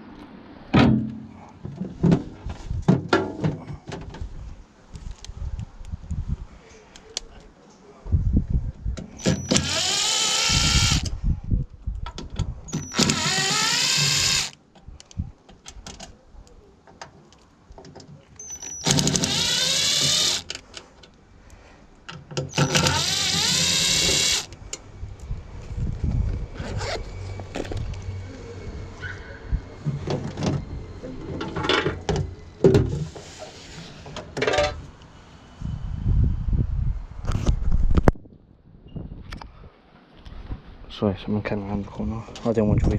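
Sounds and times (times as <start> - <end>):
cordless drill running: 9.2 - 11.1, 12.8 - 14.6, 18.8 - 20.6, 22.5 - 24.5.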